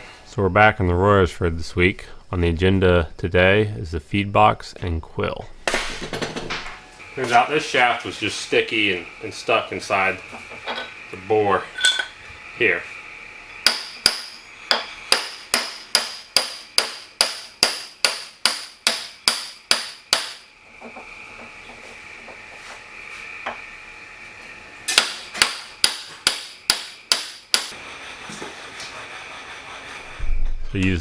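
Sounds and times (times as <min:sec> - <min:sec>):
hammer striking steel: 0:11.8 - 0:12.1, 0:13.6 - 0:20.5, 0:24.9 - 0:27.8.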